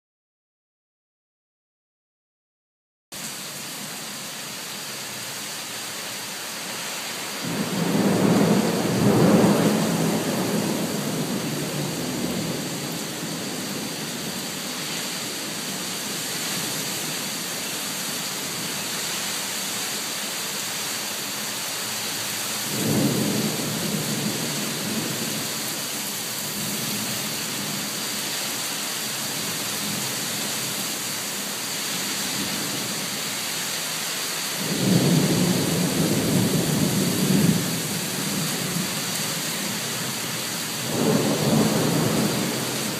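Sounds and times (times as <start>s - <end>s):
rain hiss: 3.2s - 42.9s
thunder rolling: 7.4s - 15.8s, 22.7s - 25.5s, 40.8s - 42.9s.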